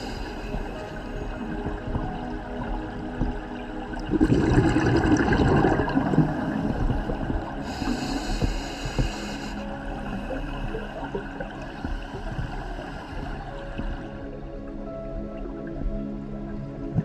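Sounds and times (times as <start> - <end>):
water bubbling and sloshing: 0.0 - 17.0
rumbling burst of bubbles: 4.0 - 7.0.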